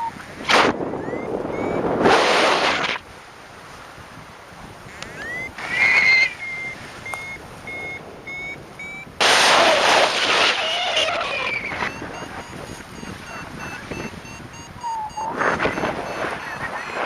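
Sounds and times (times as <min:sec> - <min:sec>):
wind noise rushing: 0:00.1 - 0:03.1, 0:04.0 - 0:17.0
variometer beeping: 0:00.9 - 0:02.1, 0:04.9 - 0:05.6, 0:06.3 - 0:09.6, 0:11.5 - 0:17.0.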